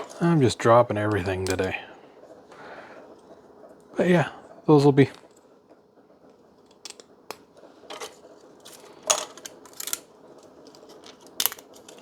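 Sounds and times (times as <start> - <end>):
small plastic pieces clattering: 7.9 - 12.0.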